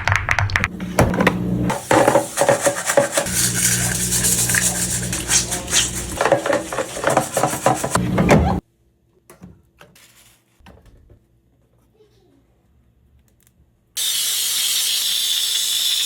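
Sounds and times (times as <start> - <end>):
scrubbing and knocking machine parts: 0.0 - 8.6.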